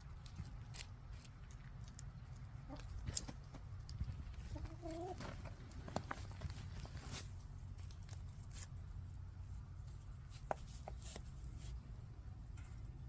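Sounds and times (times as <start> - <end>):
hens pecking and scratching: 0.0 - 13.0
low steady rumble: 0.0 - 13.0
hens clucking softly: 2.1 - 5.7.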